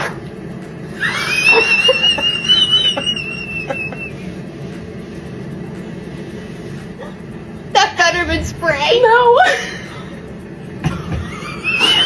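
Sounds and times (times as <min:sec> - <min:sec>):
high-pitched whistling squeal: 0:01.0 - 0:04.3.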